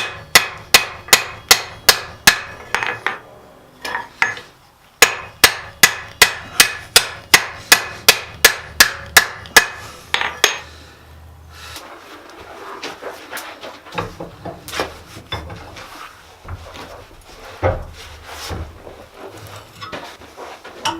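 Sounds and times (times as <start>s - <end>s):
hammer ringing on anvil: 0.0s - 3.2s, 5.0s - 10.7s.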